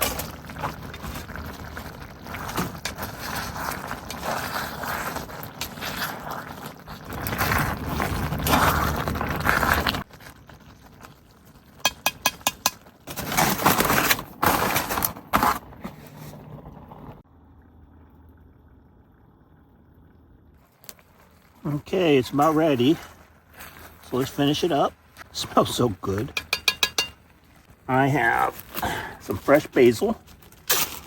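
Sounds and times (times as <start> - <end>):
utensil scraping in a pot: 0.0 - 10.2, 22.2 - 27.7.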